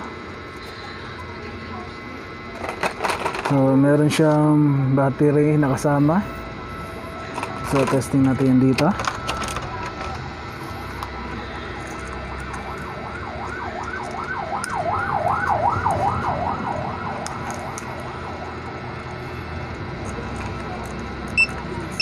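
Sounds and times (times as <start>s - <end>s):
electronic siren warbling: 4.9s - 19.0s.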